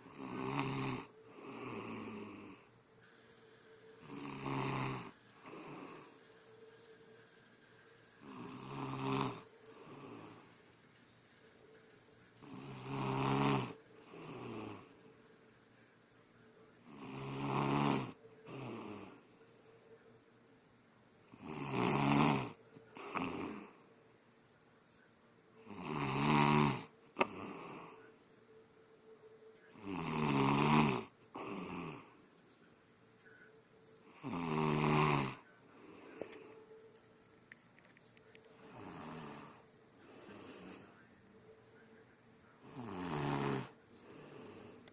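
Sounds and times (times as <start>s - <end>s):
woman snoring: 0.0s - 7.4s, 8.2s - 10.5s, 12.4s - 15.0s, 16.8s - 19.2s, 21.3s - 23.8s, 25.6s - 28.1s, 29.7s - 32.2s, 34.0s - 36.5s, 38.6s - 41.0s, 42.7s - 44.8s.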